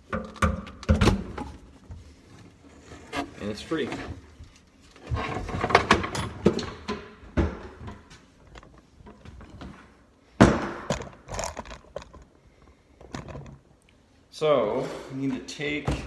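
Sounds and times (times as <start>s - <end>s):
garbage disposal knocking and clunking: 0.0s - 1.7s, 5.6s - 8.1s.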